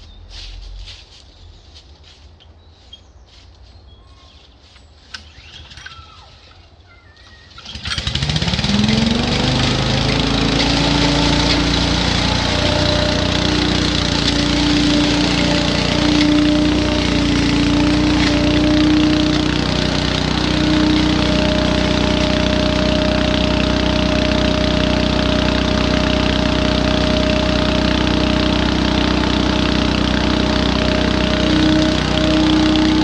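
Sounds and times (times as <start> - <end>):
faint bird chirps: 2.6 - 7.6
leaf vacuum engine starting: 5.1 - 33.0.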